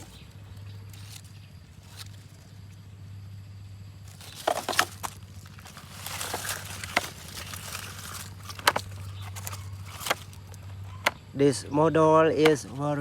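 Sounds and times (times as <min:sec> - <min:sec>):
rustling: 0:00.0 - 0:02.8, 0:04.0 - 0:11.2
steady low hum: 0:00.0 - 0:13.0
sharp clicks and knocks: 0:04.2 - 0:11.2.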